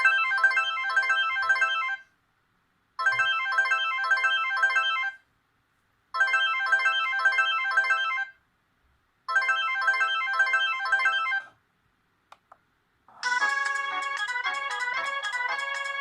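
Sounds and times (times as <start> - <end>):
phone ringtone melody: 0.0 - 2.1, 3.0 - 5.2, 6.2 - 8.4, 9.3 - 11.6, 13.1 - 16.0.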